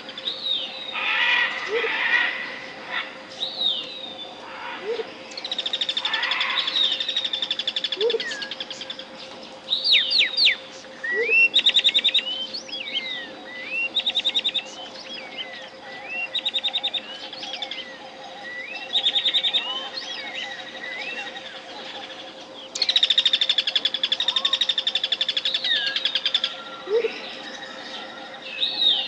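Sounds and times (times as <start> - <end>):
jungle birds calling: 0.0 - 29.0
steady pure tone: 0.0 - 29.0.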